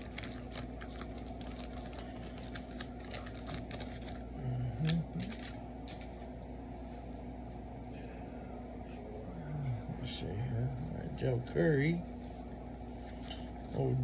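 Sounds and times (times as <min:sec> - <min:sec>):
trading cards clicking and rustling: 0:00.0 - 0:06.2.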